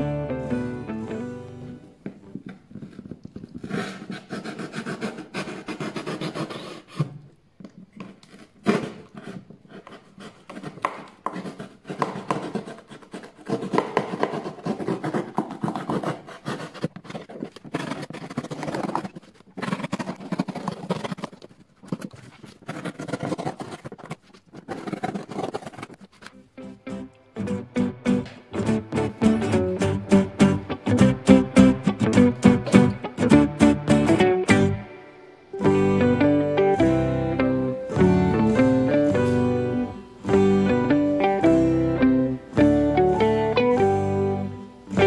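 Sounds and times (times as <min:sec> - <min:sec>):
rapid scratching and rubbing: 0:08.1 - 0:26.4.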